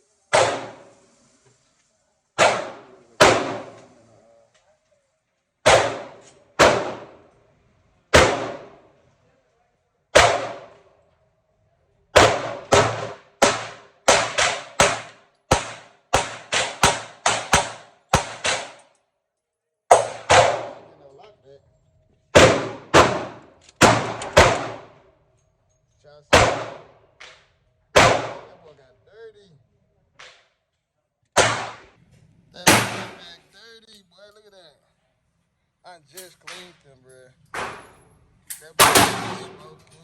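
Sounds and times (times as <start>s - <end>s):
pistol gunshots echoing: 0.3s - 0.9s, 2.4s - 4.0s, 5.6s - 7.3s, 8.1s - 8.9s, 10.1s - 10.9s, 12.2s - 18.9s, 19.9s - 21.0s, 22.3s - 25.0s, 26.3s - 28.7s, 31.4s - 32.0s, 32.6s - 33.4s, 37.5s - 39.9s.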